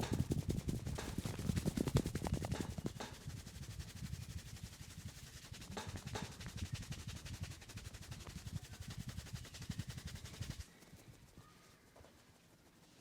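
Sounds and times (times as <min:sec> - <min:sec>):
fast rhythmic hand tapping: 0:00.0 - 0:10.7.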